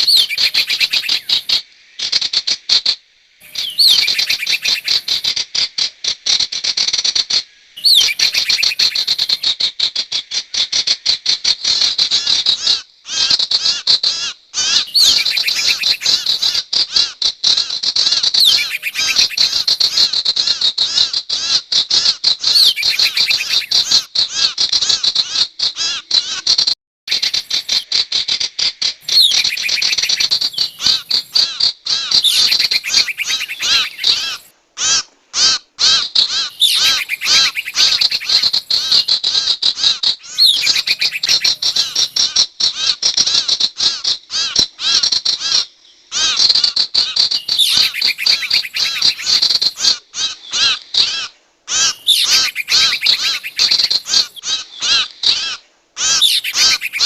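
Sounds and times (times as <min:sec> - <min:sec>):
bird call high chirping: 0:00.0 - 0:01.6, 0:03.4 - 0:05.3, 0:07.8 - 0:09.5, 0:14.6 - 0:16.6, 0:18.3 - 0:20.2, 0:22.4 - 0:24.1, 0:27.1 - 0:28.0, 0:28.9 - 0:34.5, 0:35.9 - 0:39.3, 0:40.2 - 0:42.4, 0:46.2 - 0:57.0.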